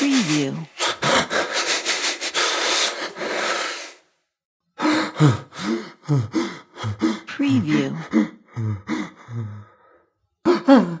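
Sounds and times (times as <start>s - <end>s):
man gasping: 4.8s - 7.3s
man panting: 4.8s - 7.3s, 8.0s - 10.6s.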